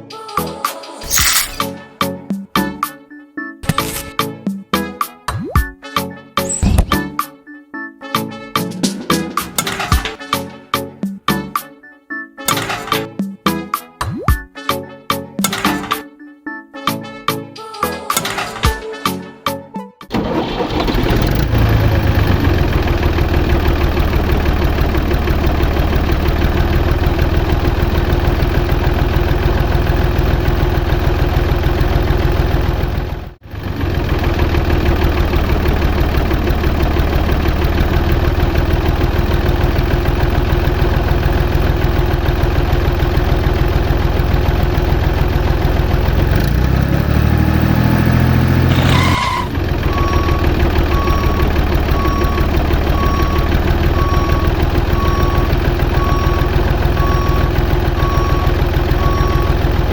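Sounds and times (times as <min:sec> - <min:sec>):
tractor engine running: 0:12.5 - 0:13.1, 0:20.1 - 0:59.9.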